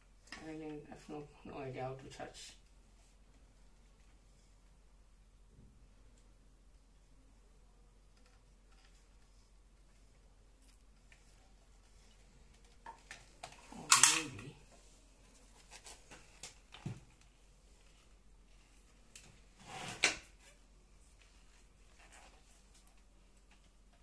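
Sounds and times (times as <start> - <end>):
plastic parts clicking and rubbing: 8.0 - 17.3.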